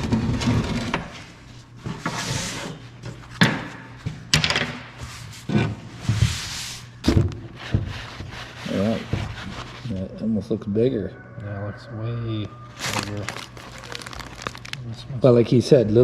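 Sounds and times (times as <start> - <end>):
metal parts knocking on workbench: 4.3 - 4.9.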